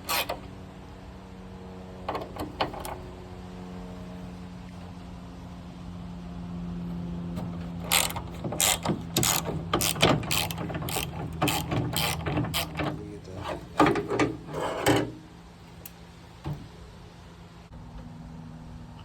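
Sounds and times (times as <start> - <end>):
ratchet wrench ratcheting: 0.0 - 0.4, 7.8 - 12.9.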